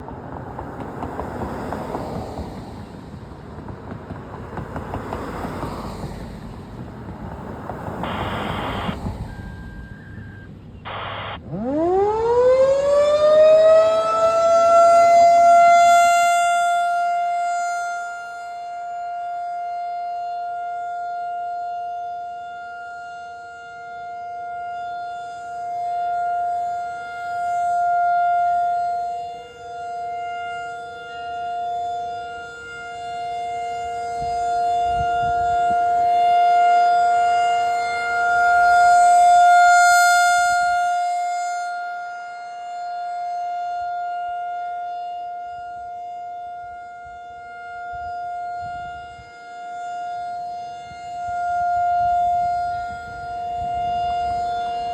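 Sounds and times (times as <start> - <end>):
rotating siren alert tone: 7.8 - 15.1.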